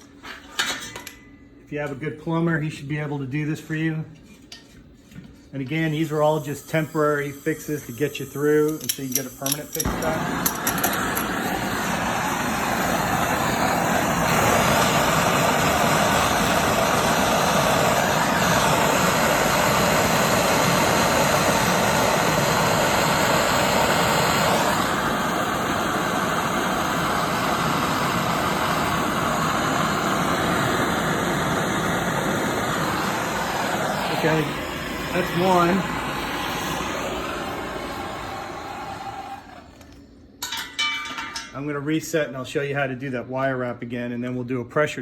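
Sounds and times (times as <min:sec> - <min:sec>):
torch flame burning: 0:05.6 - 0:40.2.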